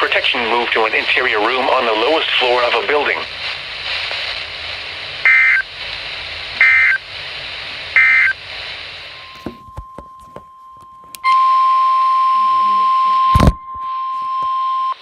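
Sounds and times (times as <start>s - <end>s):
radio static: 0.0s - 9.9s, 12.4s - 14.4s
buzzy digital data bursts: 6.6s - 7.0s.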